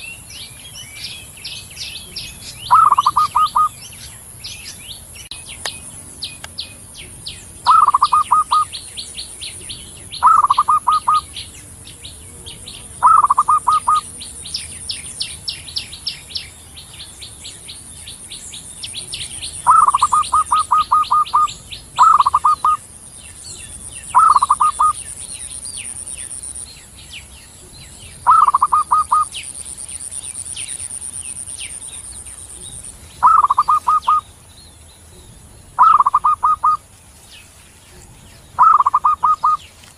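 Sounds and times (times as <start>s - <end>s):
small birds chirping: 0.0s - 39.9s
dove cooing in stuttering notes: 2.7s - 3.7s, 7.7s - 8.7s, 10.2s - 11.3s, 13.0s - 14.1s, 19.6s - 22.8s, 38.6s - 39.6s.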